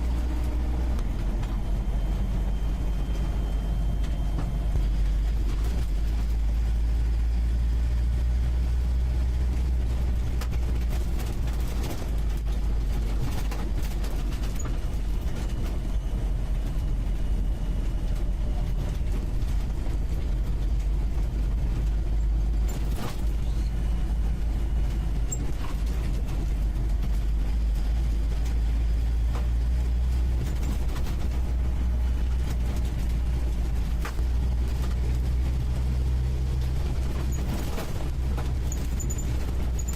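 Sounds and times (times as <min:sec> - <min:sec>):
car engine running: 0:00.0 - 0:39.9
vehicle body knocks and rattles: 0:10.2 - 0:16.2, 0:29.2 - 0:39.9.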